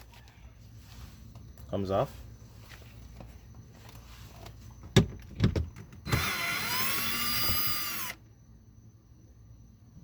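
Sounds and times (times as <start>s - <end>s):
cordless drill motor whine: 6.0s - 8.3s.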